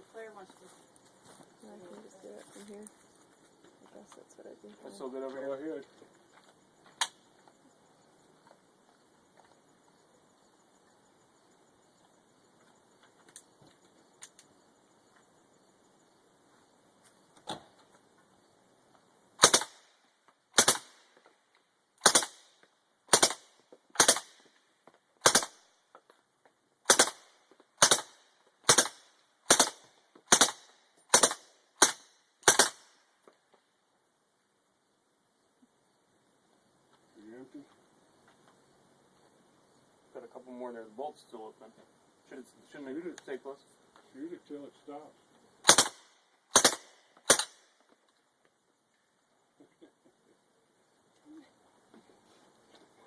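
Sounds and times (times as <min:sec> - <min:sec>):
suppressed gunshots: 0:19.4 - 0:19.9, 0:20.5 - 0:21.1, 0:22.0 - 0:22.5, 0:23.1 - 0:24.5, 0:25.2 - 0:25.7, 0:26.8 - 0:32.9, 0:45.6 - 0:47.6.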